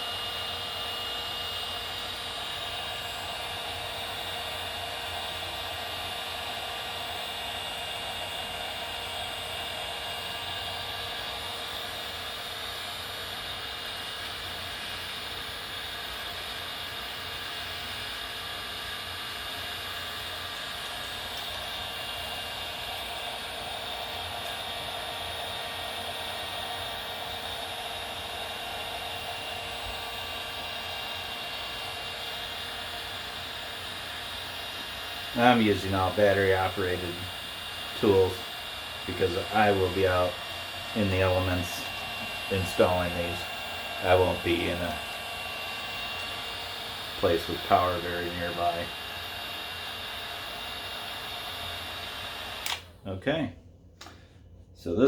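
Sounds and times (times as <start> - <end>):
heat gun blowing: 0.0 - 53.0.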